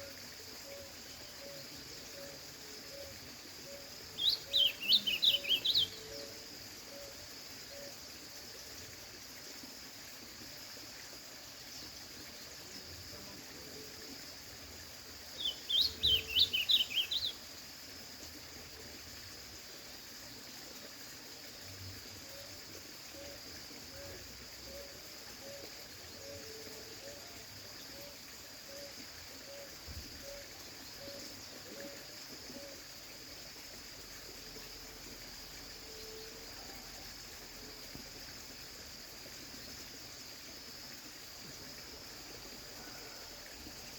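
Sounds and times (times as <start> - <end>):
bird warbling song: 3.7 - 6.3, 15.4 - 17.4.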